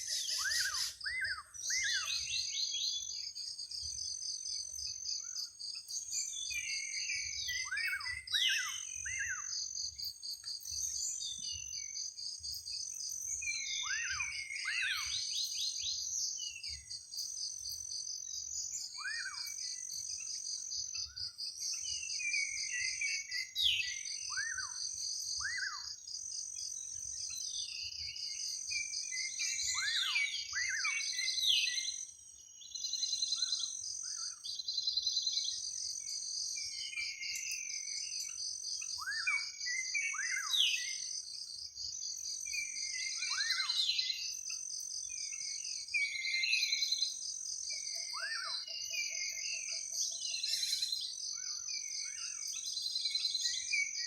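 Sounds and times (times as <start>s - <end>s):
birds calling: 0.0s - 3.3s, 42.5s - 44.4s
high-pitched insect trill: 0.0s - 54.0s.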